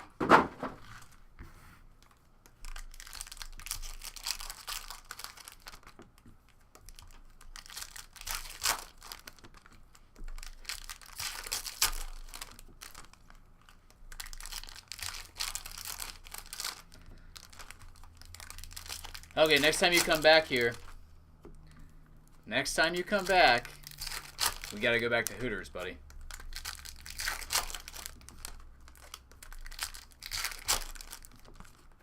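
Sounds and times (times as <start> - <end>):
cards rustling: 2.0 - 32.0
wrappers crinkling and tearing: 2.0 - 32.0.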